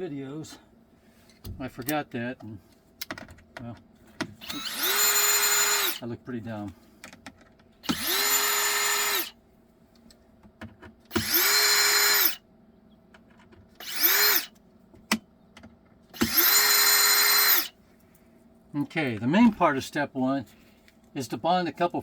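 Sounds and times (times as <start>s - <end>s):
cordless drill whining: 4.4s - 6.0s, 7.8s - 9.4s, 11.1s - 12.4s, 13.8s - 14.5s, 16.2s - 17.8s.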